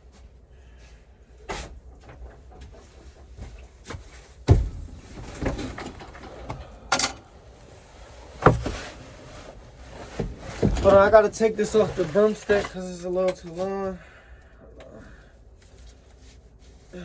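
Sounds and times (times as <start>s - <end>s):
wooden boards knocking and scraping: 4.4s - 6.6s, 8.2s - 9.3s, 10.0s - 12.8s.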